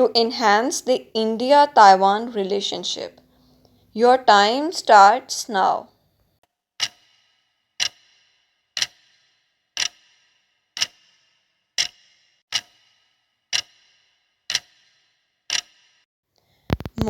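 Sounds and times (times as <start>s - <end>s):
clock ticks with metallic ring: 6.8s - 16.0s.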